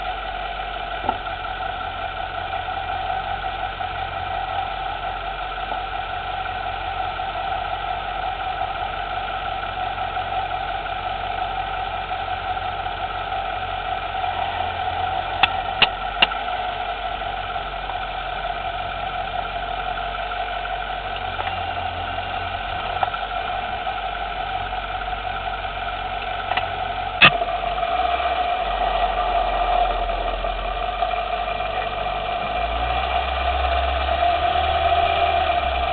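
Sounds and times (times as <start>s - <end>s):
car engine idling: 0.0s - 35.9s
suspension clicking: 14.0s - 19.9s, 20.6s - 27.6s, 31.6s - 35.9s.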